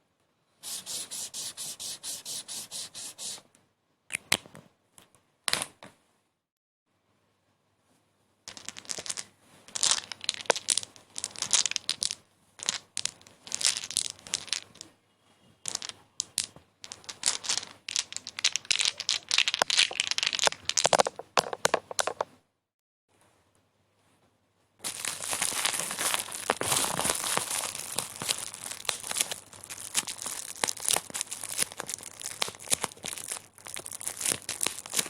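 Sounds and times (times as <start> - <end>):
material crinkling and crackling: 24.8 - 35.0.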